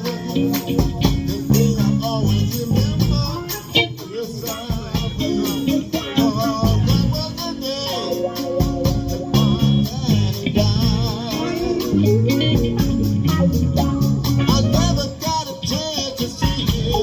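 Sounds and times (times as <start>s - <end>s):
bass guitar: 0.0s - 17.0s
jingling hand percussion: 0.0s - 17.0s
live band playing funk: 0.0s - 17.0s.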